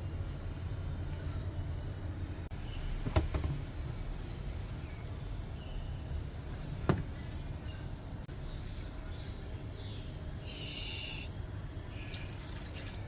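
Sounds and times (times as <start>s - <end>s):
steady low rumble: 0.0s - 2.8s.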